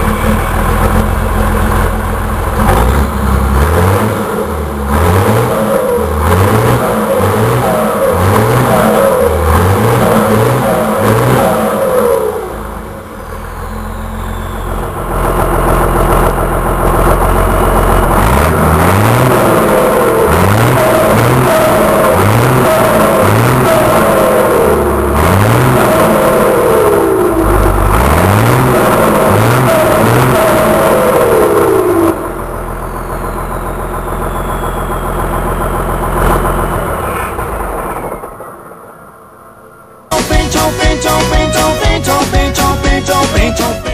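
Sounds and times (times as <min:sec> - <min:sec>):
diesel truck engine idling and revving: 0:00.0 - 0:43.9
turbocharger whistling: 0:02.5 - 0:38.4
turbo whistle: 0:13.2 - 0:15.1, 0:32.8 - 0:35.5
music: 0:40.1 - 0:43.9.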